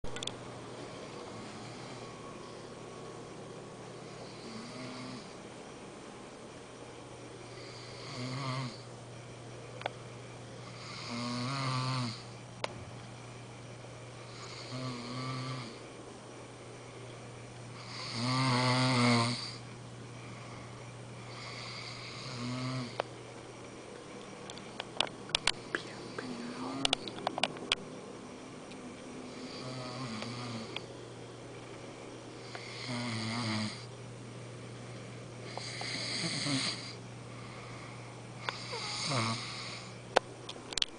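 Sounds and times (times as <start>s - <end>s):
steady low hum: 0.0s - 40.9s
man snoring: 1.3s - 2.2s, 4.0s - 5.4s, 7.6s - 8.9s, 10.6s - 12.3s, 14.3s - 15.8s, 17.8s - 19.6s, 21.3s - 23.0s, 25.8s - 27.0s, 29.2s - 30.8s, 32.4s - 33.9s, 35.5s - 40.0s.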